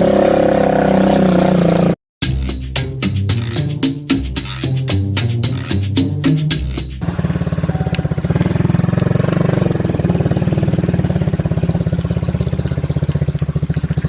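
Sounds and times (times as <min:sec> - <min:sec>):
music: 0:02.2 - 0:07.0
vehicle engine idling: 0:07.0 - 0:14.0.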